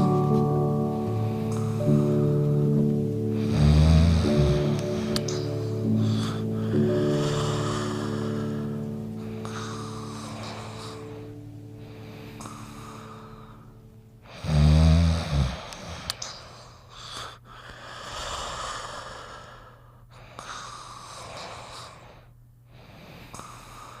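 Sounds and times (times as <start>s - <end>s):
dog snoring: 3.3s - 11.4s, 14.2s - 22.2s.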